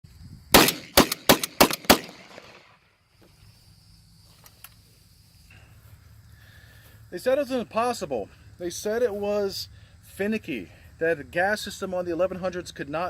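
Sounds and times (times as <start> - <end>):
shotgun shots: 0.5 - 2.7.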